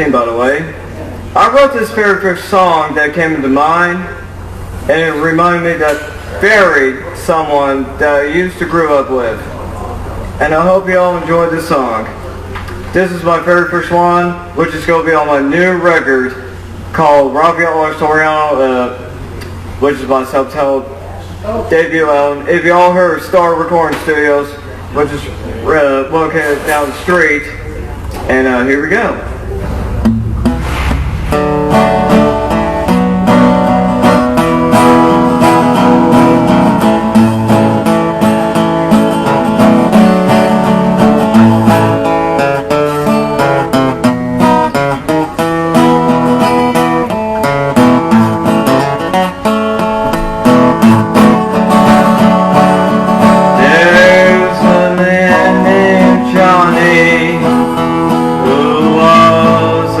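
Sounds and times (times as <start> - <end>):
acoustic guitar strumming and picking: 0.0 - 9.7, 25.7 - 60.0
man's voice: 53.6 - 57.6, 58.4 - 60.0.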